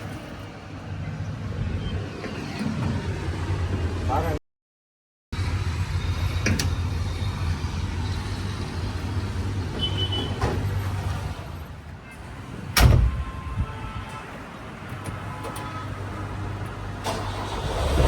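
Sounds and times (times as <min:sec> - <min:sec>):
diesel engine rumbling: 0:05.4 - 0:11.8.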